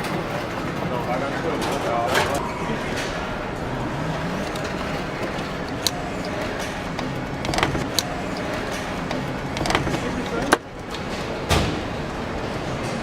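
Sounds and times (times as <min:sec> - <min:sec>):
assembly line machinery: 0:00.0 - 0:13.0
sharp metallic clicks: 0:04.4 - 0:10.6.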